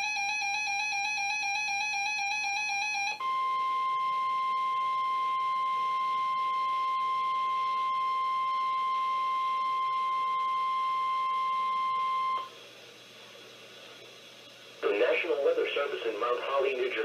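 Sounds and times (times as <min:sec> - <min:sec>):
steady alarm tone: 0:00.0 - 0:12.6
faint radio hiss: 0:03.3 - 0:17.0.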